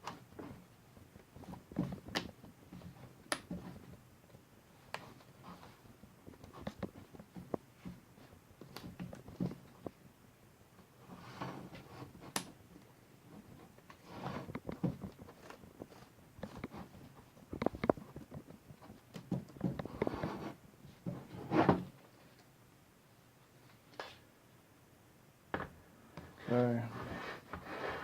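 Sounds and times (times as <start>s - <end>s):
scraping rustles: 13.2s - 22.4s, 26.3s - 28.0s.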